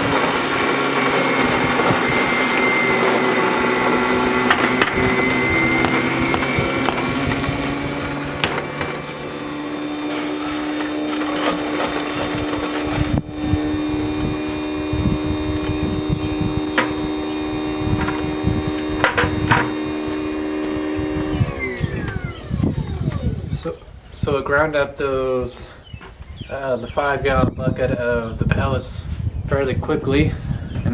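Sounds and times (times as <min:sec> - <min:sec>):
garbage disposal motor hum: 0:00.0 - 0:23.9
charcoal crackling and knocking: 0:04.3 - 0:14.4, 0:18.0 - 0:20.8.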